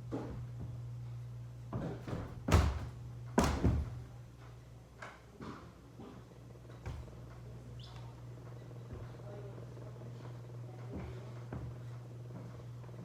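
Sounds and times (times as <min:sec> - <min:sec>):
faint knocks and bumps: 0:01.7 - 0:04.6, 0:05.4 - 0:07.5, 0:10.2 - 0:13.0
loud thumps: 0:02.1 - 0:04.1.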